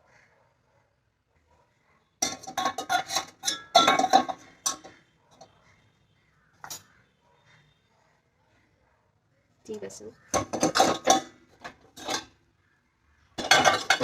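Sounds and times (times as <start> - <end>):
dishes clattering in dishwasher rack: 2.2 - 4.9, 10.4 - 11.3, 13.4 - 14.0.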